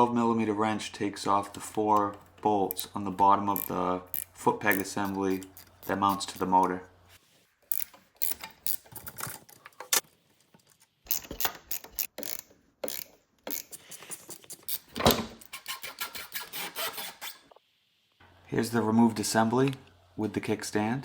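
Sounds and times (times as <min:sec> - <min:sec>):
ratchet wrench clicking: 0:03.6 - 0:06.5, 0:07.7 - 0:08.8, 0:11.1 - 0:14.9.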